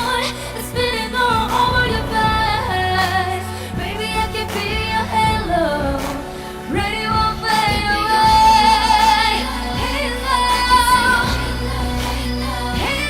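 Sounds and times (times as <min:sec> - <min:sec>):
woman singing pop song: 0:00.0 - 0:13.0.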